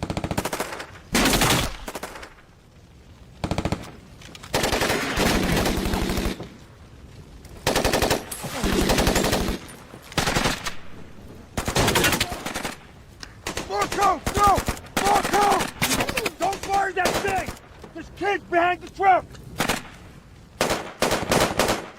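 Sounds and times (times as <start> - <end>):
automatic gunfire bursts: 20.6 - 21.9.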